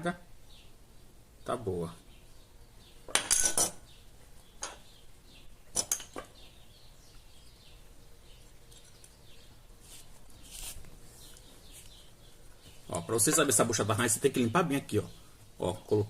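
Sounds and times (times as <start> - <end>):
small metal parts clinking: 3.1 - 3.8, 5.8 - 6.3.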